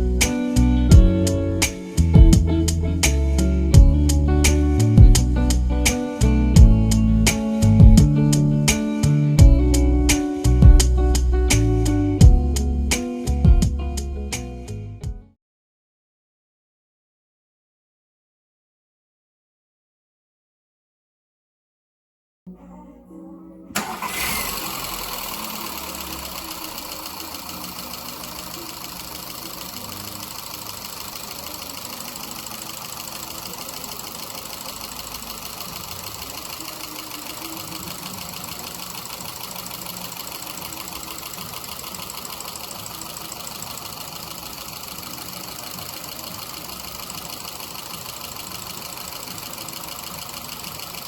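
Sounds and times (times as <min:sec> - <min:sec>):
car engine idling: 0:23.8 - 0:51.0
fine fast engine ticking: 0:23.8 - 0:51.0.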